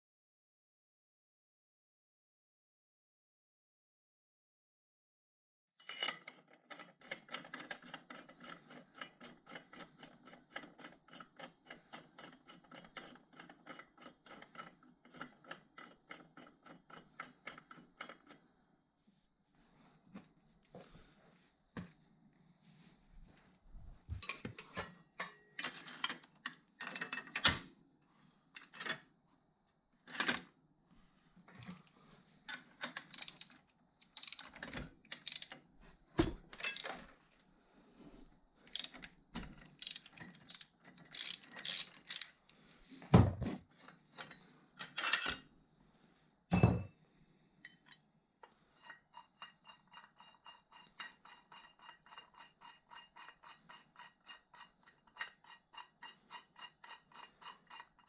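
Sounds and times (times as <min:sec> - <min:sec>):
metallic clutch clicks and knocks: 0:05.9 - 0:18.4, 0:32.5 - 0:35.7, 0:36.5 - 0:37.1, 0:38.7 - 0:42.4, 0:48.8 - 0:58.0
regular creaking tick: 0:48.4 - 0:58.0.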